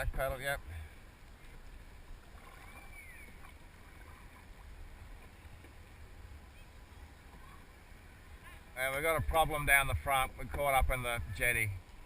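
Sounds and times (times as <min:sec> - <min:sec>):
water: 0:00.0 - 0:12.0
faint paddle strokes: 0:00.6 - 0:10.0
wind rumble on microphone: 0:02.4 - 0:12.0.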